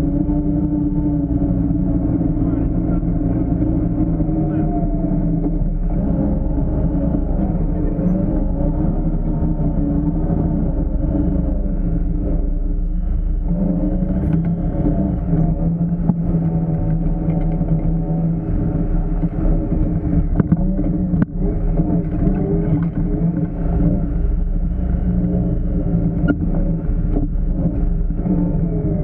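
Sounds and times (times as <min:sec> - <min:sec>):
utility vehicle engine under load: 0:00.0 - 0:29.0.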